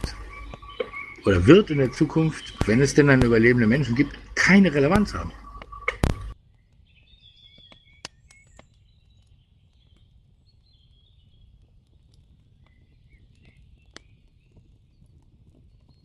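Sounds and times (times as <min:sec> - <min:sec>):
low rumbling background: 0:00.0 - 0:06.4
sharp clicks: 0:00.0 - 0:06.4
faint bird chirping: 0:00.0 - 0:16.0.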